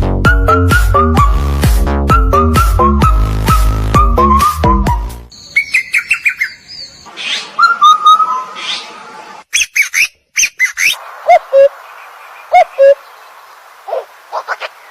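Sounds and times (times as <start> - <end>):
birds chirping: 5.3 - 14.9.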